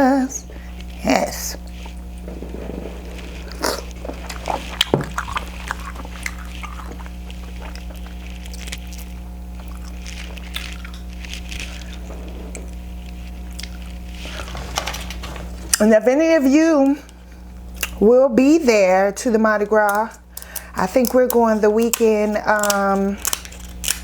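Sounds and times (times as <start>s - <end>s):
low electrical hum: 0.0s - 24.0s
wet chewing and smacking: 1.6s - 14.7s, 17.7s - 18.0s, 19.8s - 24.0s.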